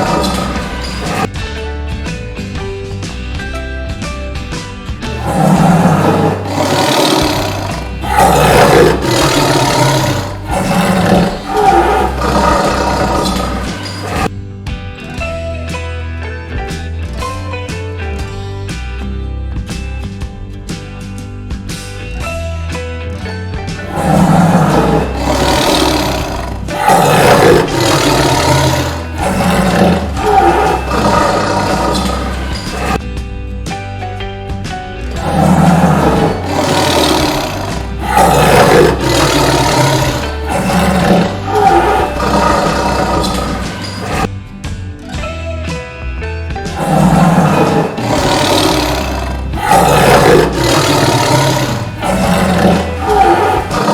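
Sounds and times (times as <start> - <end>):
tiger roaring: 0.0 - 1.3, 5.1 - 14.3, 23.8 - 33.0, 35.2 - 44.3, 46.7 - 53.9.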